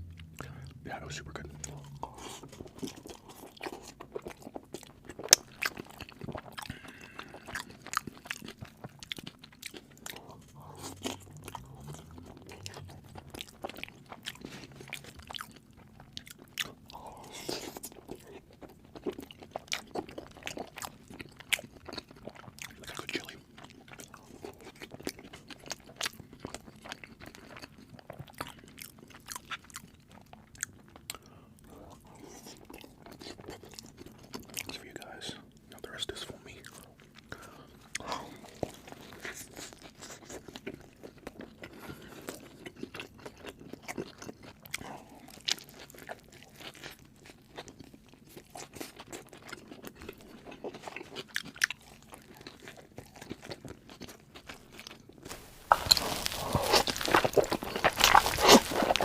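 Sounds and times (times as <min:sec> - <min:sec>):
person chewing crunchy food: 0:00.0 - 0:59.0.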